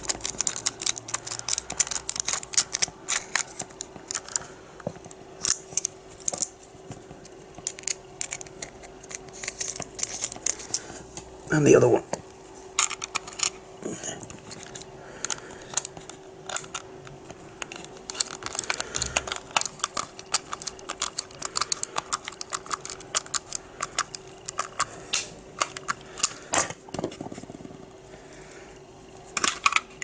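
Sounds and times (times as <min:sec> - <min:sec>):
plastic parts clicking and tapping: 0:00.0 - 0:11.3, 0:12.1 - 0:13.6, 0:14.2 - 0:27.8, 0:29.3 - 0:30.0
faint steady hum: 0:00.0 - 0:30.0.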